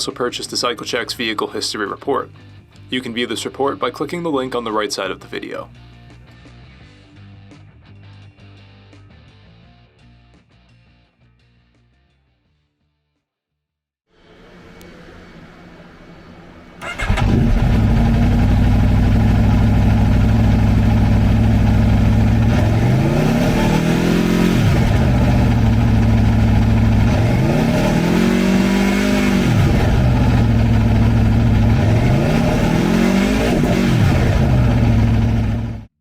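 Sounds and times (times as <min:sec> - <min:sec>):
motorcycle engine idling and revving: 0:14.4 - 0:36.0.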